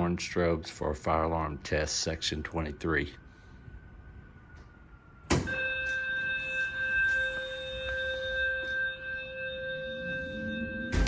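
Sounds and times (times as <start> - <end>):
fire alarm tone: 3.3 - 11.0.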